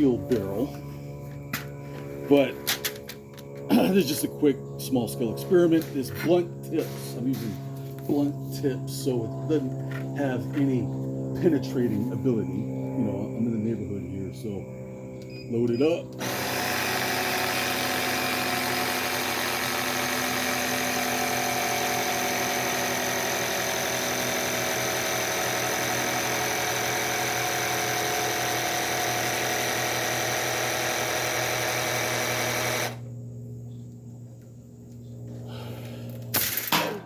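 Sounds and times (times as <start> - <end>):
electric air compressor running: 16.1 - 33.2.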